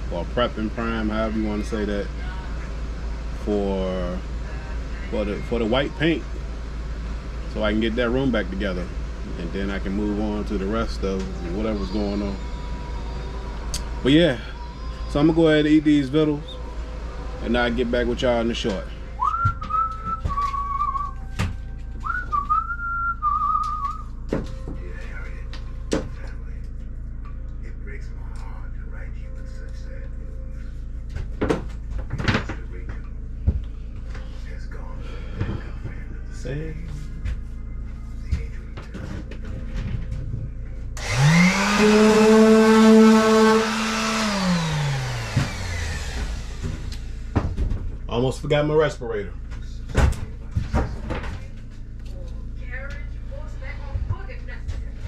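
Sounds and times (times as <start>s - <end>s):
steady low hum: 0.0s - 55.0s
person whistling a tune: 19.2s - 21.4s, 22.0s - 24.1s
electric power sander running: 41.0s - 47.4s.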